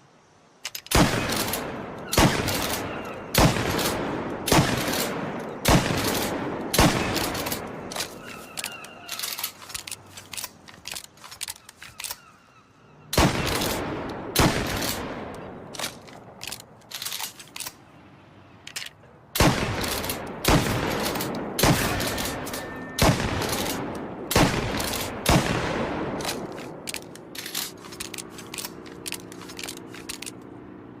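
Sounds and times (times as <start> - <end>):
sharp cracks and clicks: 0.6 - 12.3, 13.2 - 17.8, 18.7 - 30.5
shotgun firing: 0.9 - 8.2, 13.2 - 16.0, 19.4 - 26.8.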